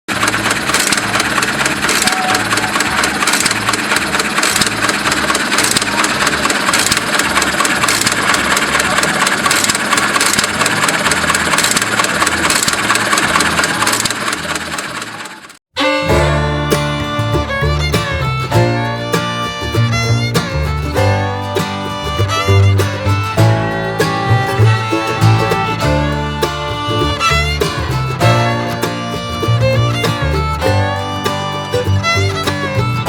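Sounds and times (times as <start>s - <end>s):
engine running with low pulse: 0.1s - 15.6s.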